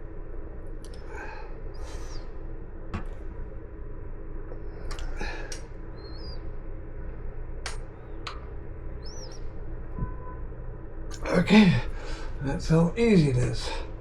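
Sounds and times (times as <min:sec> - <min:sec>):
low background noise: 0:00.0 - 0:14.0
sharp clicks: 0:00.8 - 0:01.1, 0:04.8 - 0:05.7, 0:07.6 - 0:08.5
bird chirping: 0:01.7 - 0:02.4, 0:04.5 - 0:06.6, 0:07.9 - 0:10.4.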